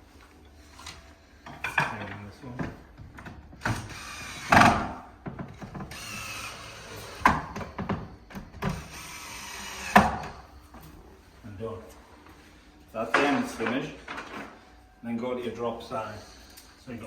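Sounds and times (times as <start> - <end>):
power screwdriver running: 3.6 - 4.7, 5.8 - 7.2, 8.7 - 10.3.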